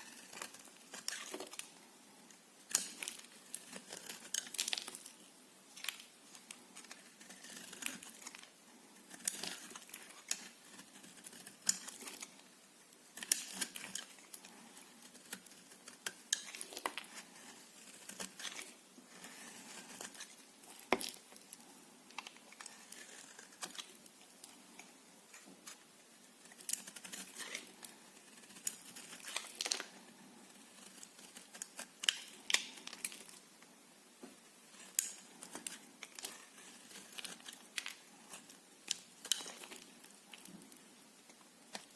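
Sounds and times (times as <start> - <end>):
knife cutting through soap: 6.8 - 8.4, 9.1 - 12.3, 13.2 - 21.2.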